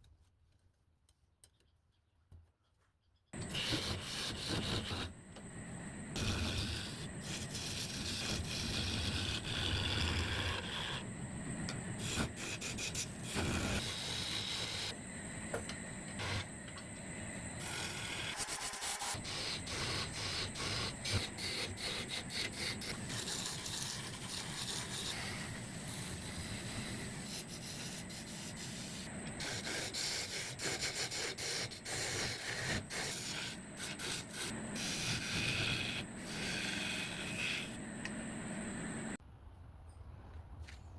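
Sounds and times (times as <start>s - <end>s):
wood lathe scraping: 3.4s - 11.1s, 11.7s - 15.0s, 17.5s - 39.0s.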